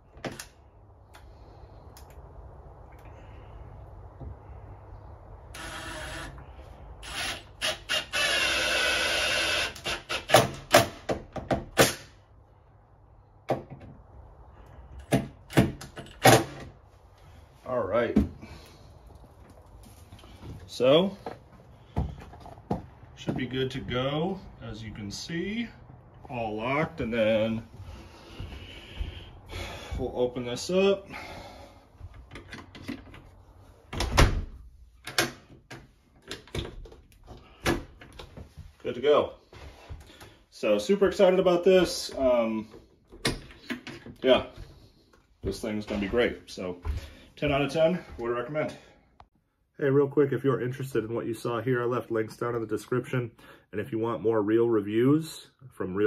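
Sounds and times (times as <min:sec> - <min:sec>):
cordless drill driving screw: 0:05.5 - 0:06.4, 0:07.0 - 0:10.6.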